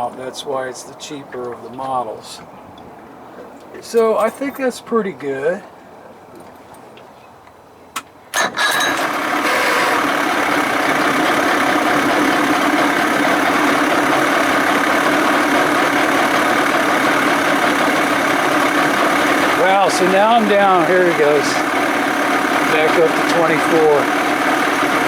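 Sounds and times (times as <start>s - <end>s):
outboard motor starting and idling: 8.3s - 25.0s.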